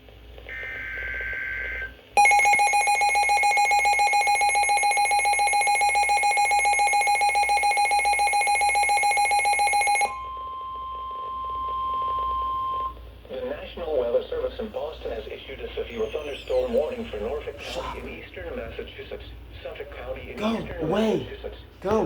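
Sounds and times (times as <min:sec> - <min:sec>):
rapidly pulsing electronic alarm beep: 0:02.2 - 0:12.9, 0:15.8 - 0:17.5
steady single-pitch alert tone: 0:02.2 - 0:12.9, 0:15.9 - 0:17.5
warbling data burst: 0:15.8 - 0:18.0.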